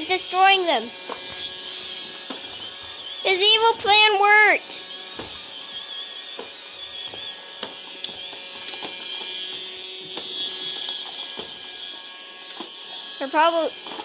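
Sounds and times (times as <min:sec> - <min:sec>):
robot vacuum motor whine: 0:00.0 - 0:14.0.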